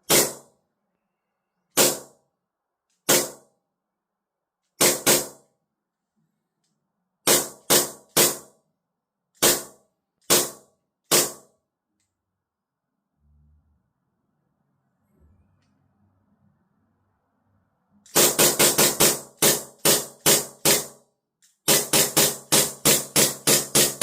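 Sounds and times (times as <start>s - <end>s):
airsoft pistol shots: 0.0s - 0.5s, 1.7s - 2.2s, 3.0s - 3.5s, 4.8s - 5.4s, 7.3s - 8.5s, 9.4s - 11.5s, 18.1s - 21.0s, 21.6s - 24.0s.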